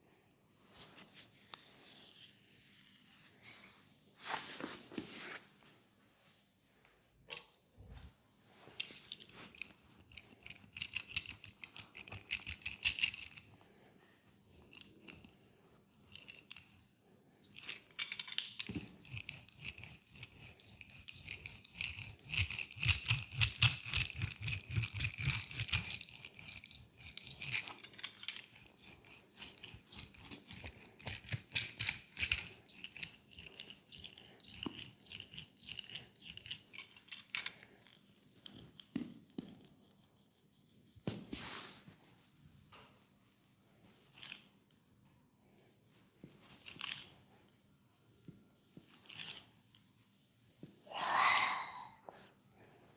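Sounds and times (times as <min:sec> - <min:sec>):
hands rubbing and clicking on leg: 0:03.5 - 0:05.4, 0:17.5 - 0:42.0.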